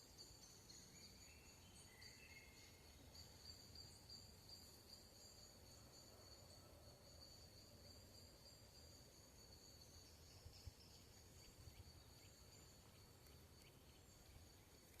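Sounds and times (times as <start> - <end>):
low forest ambience rumble: 6.8 - 15.0.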